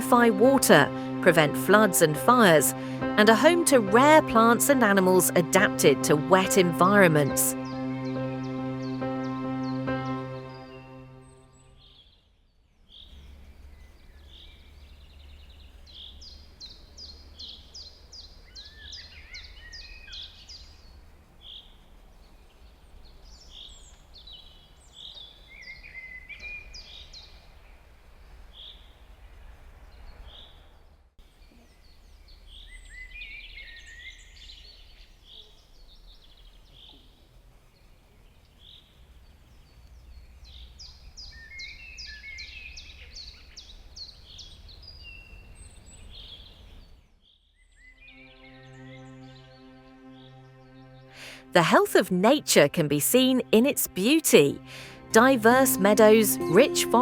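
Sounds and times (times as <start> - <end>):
songbirds singing: 12.9 - 27.4, 31.4 - 47.0.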